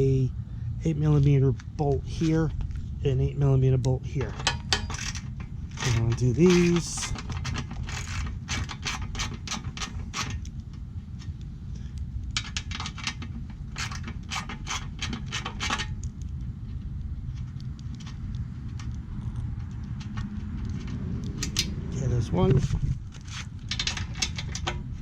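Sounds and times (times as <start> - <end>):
low rumble: 0.0 - 25.0
socket ratchet clicking: 19.9 - 21.8.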